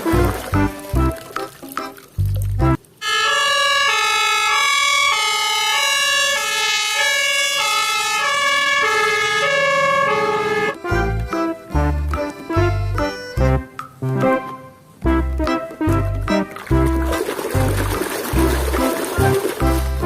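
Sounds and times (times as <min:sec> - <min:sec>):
toy electronic siren tune: 0:03.0 - 0:10.8.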